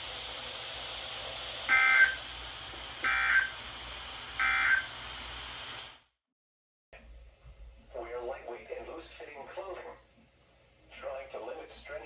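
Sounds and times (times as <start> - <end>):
broadcast hiss: 0.0 - 6.1, 7.8 - 12.0
digital data tone bursts: 1.7 - 2.2, 3.0 - 3.6, 4.4 - 4.9.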